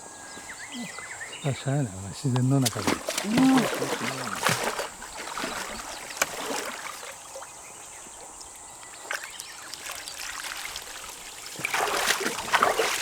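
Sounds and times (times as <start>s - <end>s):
water trickling in a pond: 1.5s - 13.0s
water splashing: 2.2s - 7.7s, 9.0s - 13.0s.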